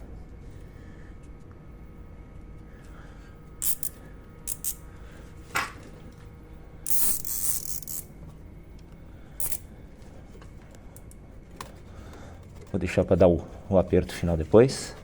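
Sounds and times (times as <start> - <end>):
cable tie rasping zip: 3.6 - 4.8, 6.9 - 8.0, 9.4 - 9.6.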